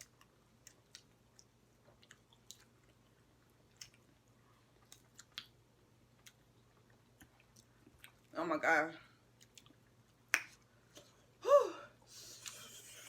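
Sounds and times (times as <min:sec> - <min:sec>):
faint chewing with wet mouth clicks: 0:00.0 - 0:08.4, 0:09.2 - 0:11.1.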